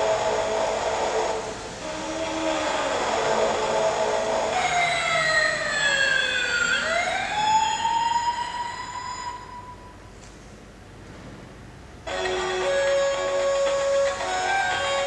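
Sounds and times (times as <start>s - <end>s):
electronic siren tone gliding: 0.0s - 10.0s.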